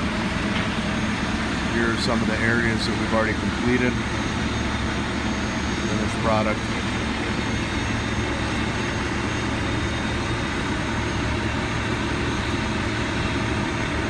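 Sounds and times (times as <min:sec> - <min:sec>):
low rumble of street traffic: 0:00.0 - 0:14.0.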